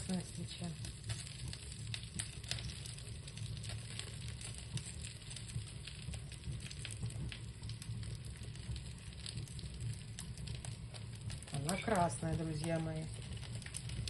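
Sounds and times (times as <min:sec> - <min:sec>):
fire crackling and popping: 0:00.0 - 0:14.0
low steady rumble: 0:00.0 - 0:14.0.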